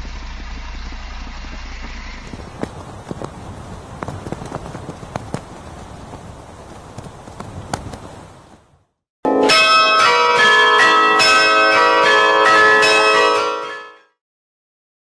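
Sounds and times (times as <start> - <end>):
bells ringing in a peal: 9.3 - 14.2.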